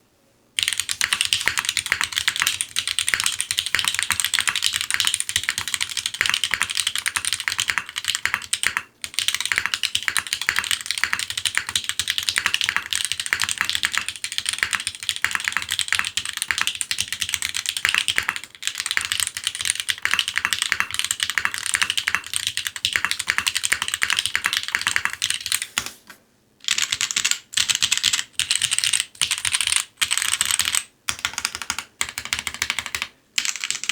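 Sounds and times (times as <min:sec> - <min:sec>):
mechanical keyboard typing: 0:00.6 - 0:26.0, 0:26.6 - 0:33.9.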